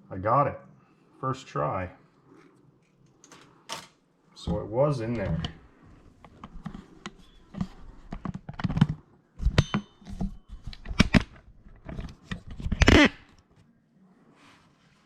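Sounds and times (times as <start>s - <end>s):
plastic parts clicking and knocking: 6.3s - 13.1s
plastic scraping creak: 11.8s - 13.4s.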